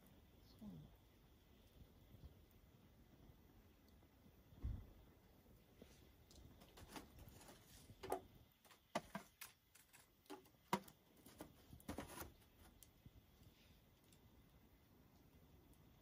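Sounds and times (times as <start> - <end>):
faint clicks and light taps: 5.8 - 14.3.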